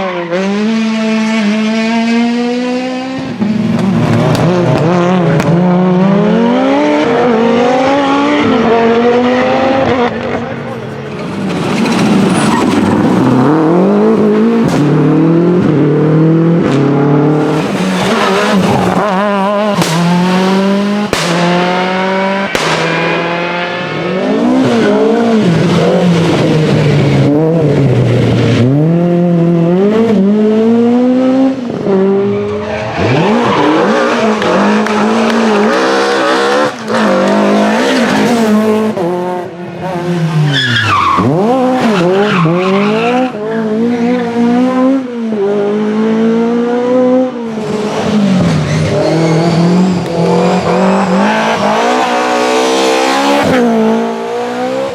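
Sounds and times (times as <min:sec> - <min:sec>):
rally car engines revving: 0:00.0 - 0:54.9
tyres skidding: 0:02.3 - 0:15.8, 0:16.6 - 0:30.6, 0:31.7 - 0:45.0, 0:47.5 - 0:54.9
sharp cracks: 0:19.7 - 0:20.3, 0:21.0 - 0:23.4.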